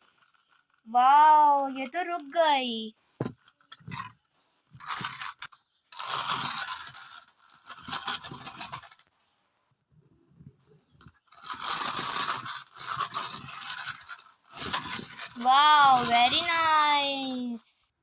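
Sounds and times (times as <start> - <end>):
toy packaging crunching: 0.1 - 0.8, 11.2 - 17.5.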